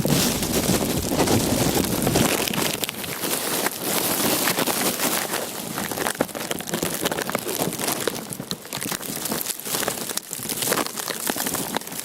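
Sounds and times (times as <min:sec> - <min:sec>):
plastic crackling and rustling: 0:00.0 - 0:12.0.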